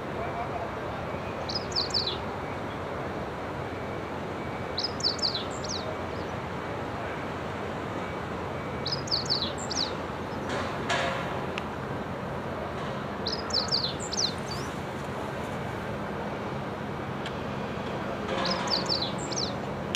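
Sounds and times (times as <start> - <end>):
steady background noise: 0.0 - 19.9
bird singing: 1.2 - 2.8, 4.7 - 6.4, 8.7 - 10.6, 13.2 - 14.8, 18.4 - 19.6.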